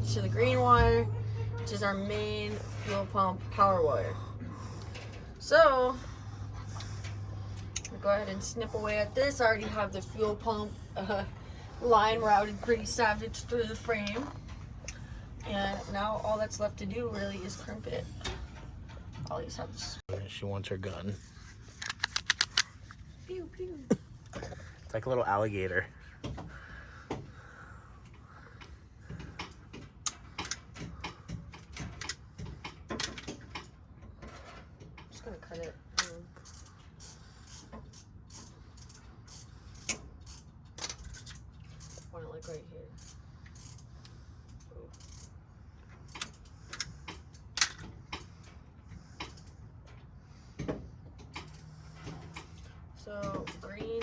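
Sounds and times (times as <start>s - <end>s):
wire cutters clicking and snipping: 21.5s - 23.1s, 46.0s - 48.6s
wire crimping tool clicking: 21.7s - 23.0s.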